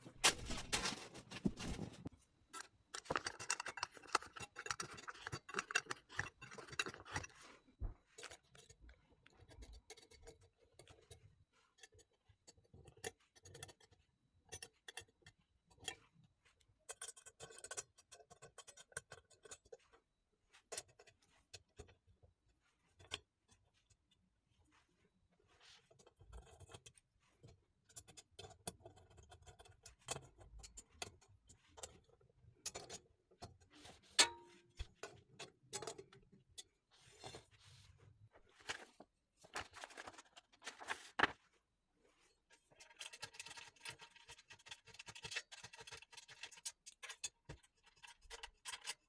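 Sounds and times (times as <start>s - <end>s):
metal parts clicking and tapping: 0.1s - 7.4s, 42.7s - 49.0s.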